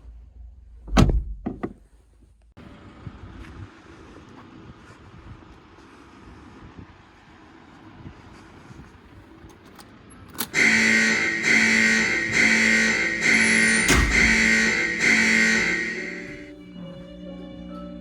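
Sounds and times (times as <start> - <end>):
distorted electric guitar riff: 10.6 - 16.5.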